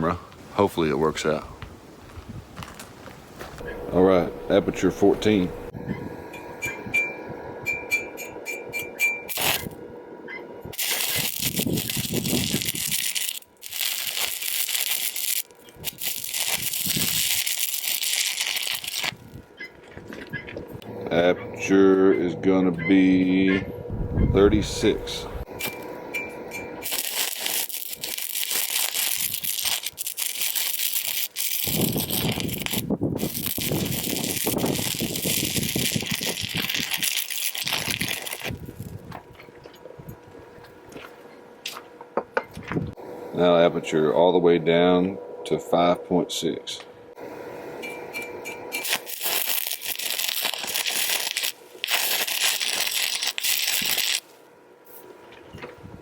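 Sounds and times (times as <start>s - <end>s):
electric welding arc crackling: 9.3s - 9.8s, 10.7s - 19.5s, 25.5s - 25.9s, 26.8s - 39.0s, 48.7s - 54.4s.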